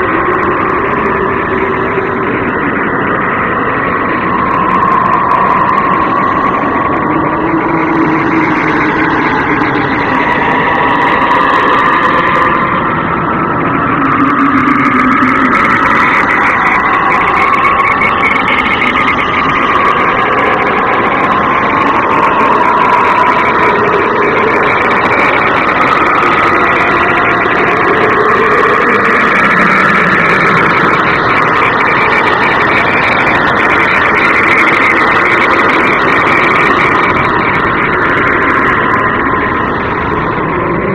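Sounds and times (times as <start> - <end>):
droning ambient rumble: 0.0 - 40.9.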